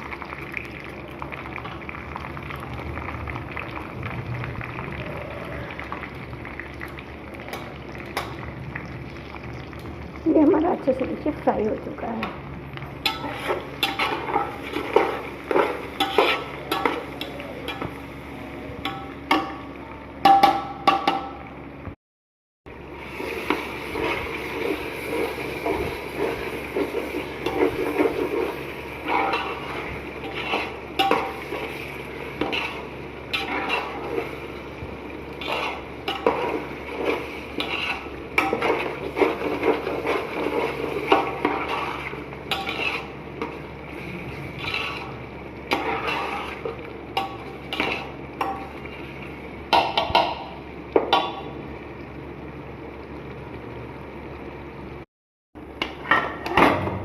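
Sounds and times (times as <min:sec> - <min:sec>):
chicken sizzling: 0:00.0 - 0:20.2, 0:22.7 - 0:55.0
metal spatula scraping pan: 0:13.0 - 0:17.9, 0:24.0 - 0:34.4, 0:35.3 - 0:49.0.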